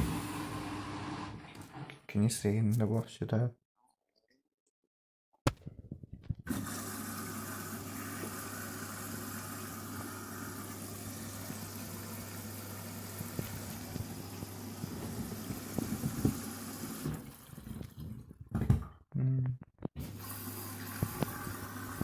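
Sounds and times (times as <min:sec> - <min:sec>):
water rushing into washing machine: 0:00.0 - 0:01.9, 0:06.5 - 0:18.4, 0:20.0 - 0:22.0.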